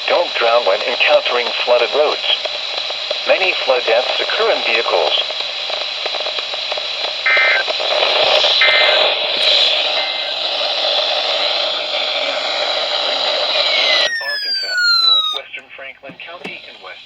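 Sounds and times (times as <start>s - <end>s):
radio static hiss: 0.0s - 17.0s
short bursts of data tones: 7.2s - 7.8s, 8.5s - 10.6s, 13.6s - 15.4s.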